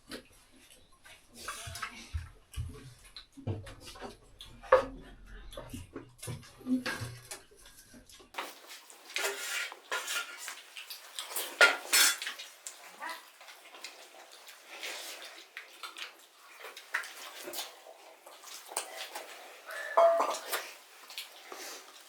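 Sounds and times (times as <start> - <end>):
dishes and utensils clinking: 8.4 - 15.3, 18.5 - 22.0.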